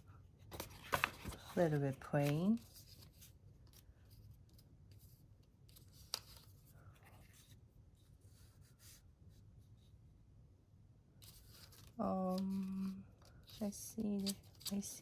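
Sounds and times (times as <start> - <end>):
paper sheets rustling: 0.5 - 3.3.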